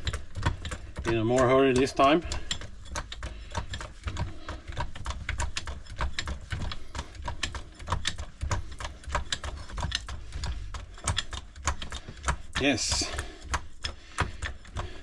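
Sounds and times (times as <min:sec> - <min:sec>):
hydraulic jack pump clicking: 0:00.0 - 0:15.0.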